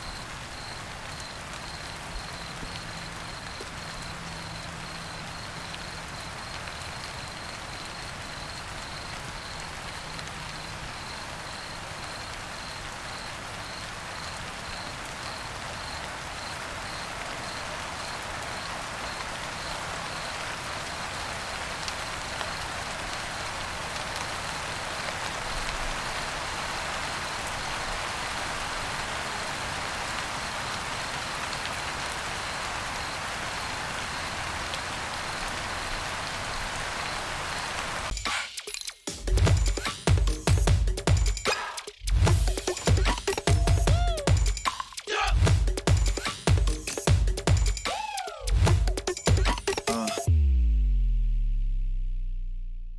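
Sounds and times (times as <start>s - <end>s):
crickets chirping: 0.0s - 38.2s
light rain falling: 0.0s - 50.4s.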